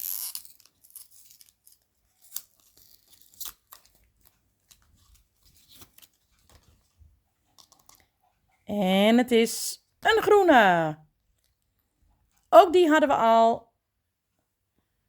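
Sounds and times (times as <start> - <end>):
loud rip of packaging: 0.0 - 3.9
wrapping being cut and torn: 0.0 - 6.3.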